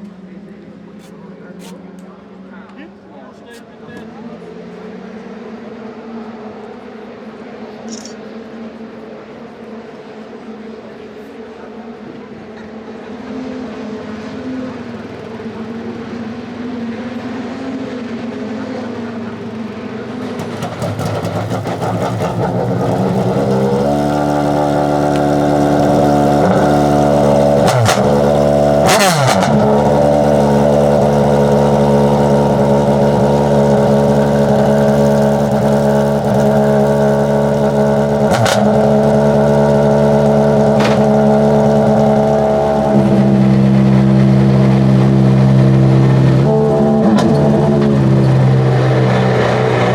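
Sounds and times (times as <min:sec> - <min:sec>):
race car engine running: 0:00.0 - 0:49.9
engine crack: 0:19.6 - 0:49.9.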